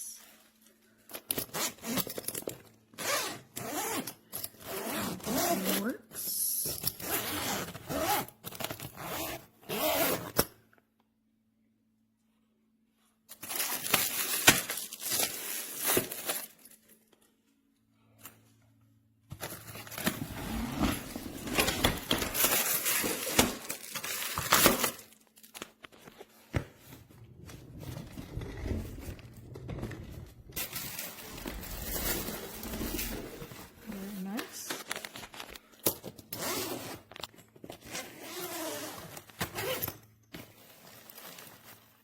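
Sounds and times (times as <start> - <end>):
suitcase wrapping crinkling: 13.3 - 16.9, 19.4 - 35.7, 36.4 - 42.0.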